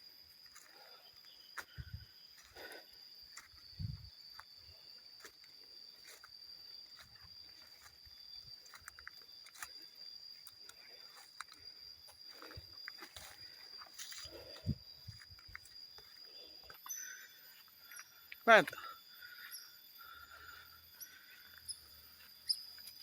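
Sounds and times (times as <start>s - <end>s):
footsteps on forest floor: 0.4s - 18.2s.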